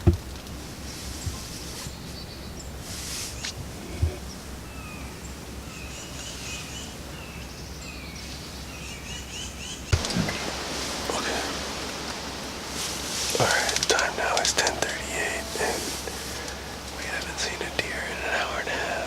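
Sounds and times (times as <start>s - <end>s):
small birds chirping: 0.7s - 19.0s
low outdoor rumble: 9.9s - 19.0s.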